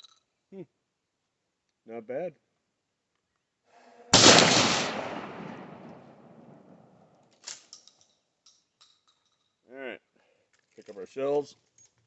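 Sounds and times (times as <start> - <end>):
shotgun blast: 4.2 - 7.0.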